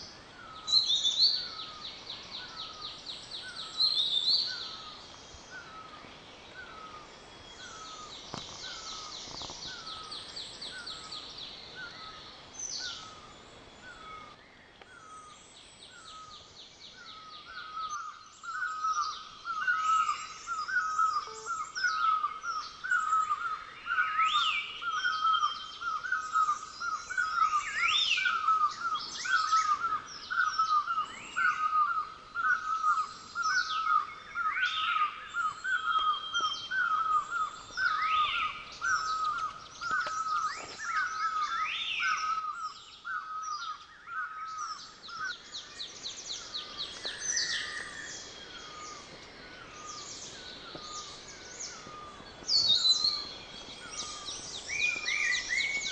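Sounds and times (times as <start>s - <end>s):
birds chirping and whistling: 0.4s - 55.9s
bird repeating low note: 21.1s - 22.0s.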